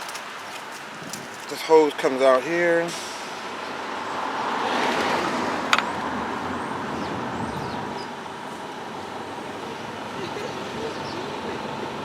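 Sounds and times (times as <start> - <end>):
vehicle passing by: 3.2 - 11.6.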